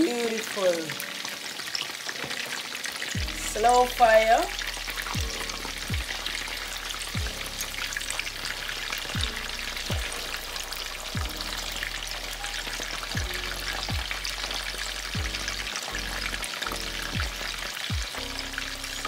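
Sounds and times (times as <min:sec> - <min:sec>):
fish sizzling in a frying pan: 0:00.0 - 0:19.0
deep thud: 0:05.2 - 0:06.2, 0:07.2 - 0:07.4, 0:09.2 - 0:10.2.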